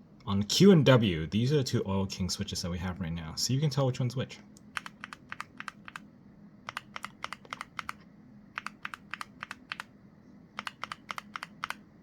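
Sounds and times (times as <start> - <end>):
mechanical keyboard keys clacking: 4.8 - 6.0, 6.7 - 8.0, 8.6 - 9.9, 10.6 - 11.8.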